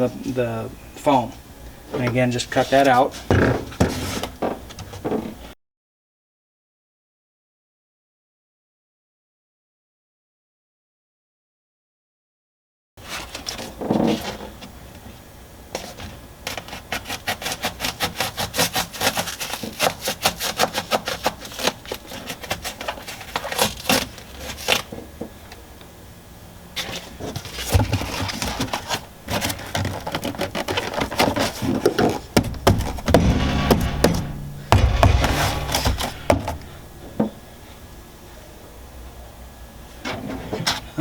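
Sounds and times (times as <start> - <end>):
knife sawing through foam: 15.8 - 24.9, 27.7 - 34.0
heavy knocks: 29.3 - 37.7.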